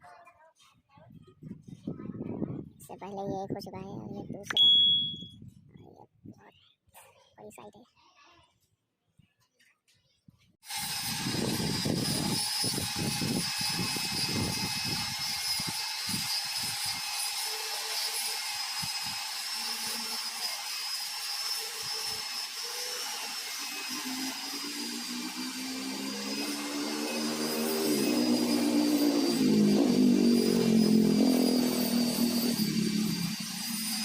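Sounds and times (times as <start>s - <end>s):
power tool motor whining: 10.7s - 34.0s
engine revving: 23.7s - 34.0s.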